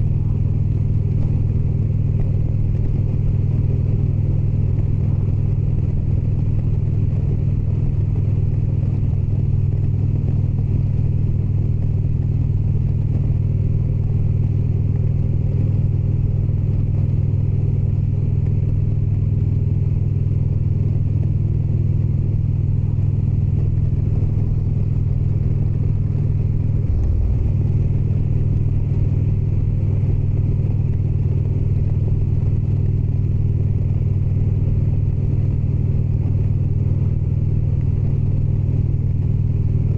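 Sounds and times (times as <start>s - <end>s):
motorcycle engine cruising: 20.4s - 37.0s.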